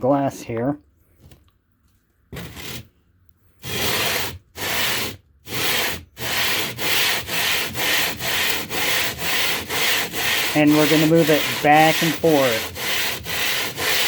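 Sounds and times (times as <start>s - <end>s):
stone scraping on glass: 2.3s - 2.9s, 3.6s - 14.0s.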